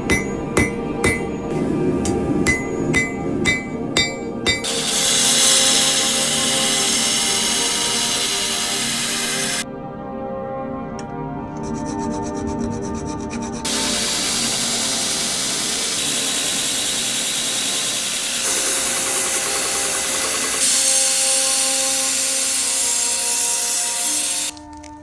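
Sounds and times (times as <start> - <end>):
power grinder grinding steel: 4.0 - 9.6, 13.6 - 24.5.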